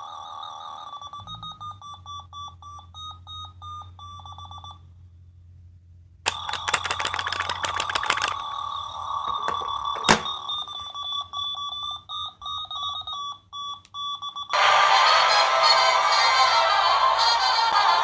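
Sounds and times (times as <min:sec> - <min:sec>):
sharp click: 0:06.3 - 0:08.4, 0:09.3 - 0:10.4
electronic alarm beeps: 0:09.3 - 0:14.6.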